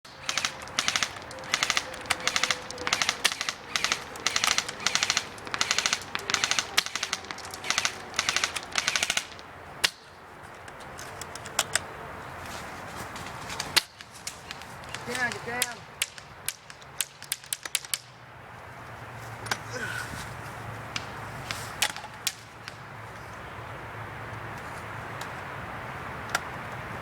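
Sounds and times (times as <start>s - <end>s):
airsoft guns firing bursts: 0.1s - 10.0s
airsoft single shots: 0.2s - 10.0s.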